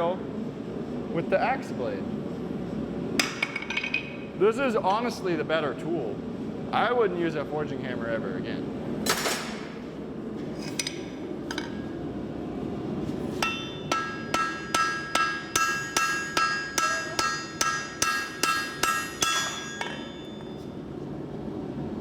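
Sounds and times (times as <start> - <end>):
hammer striking hot steel on anvil: 13.3 - 20.7.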